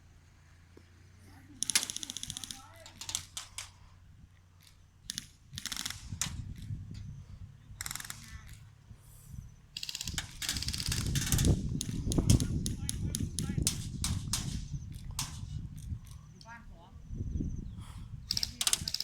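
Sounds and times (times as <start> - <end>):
airsoft guns firing bursts: 1.5 - 3.8, 4.6 - 6.8, 7.7 - 8.7, 9.7 - 15.8, 18.3 - 19.0.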